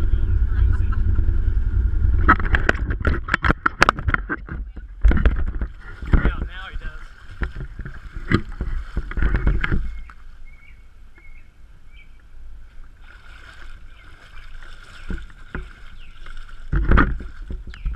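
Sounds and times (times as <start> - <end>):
wind knocks on microphone: 0.0 - 10.1
boat moving on water: 0.0 - 17.9.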